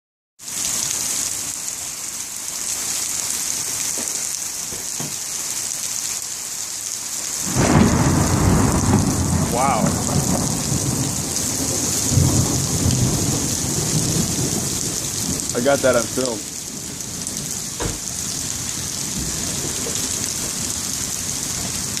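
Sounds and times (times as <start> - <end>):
rain hiss: 0.4 - 22.0
thunder rumbling: 7.4 - 22.0.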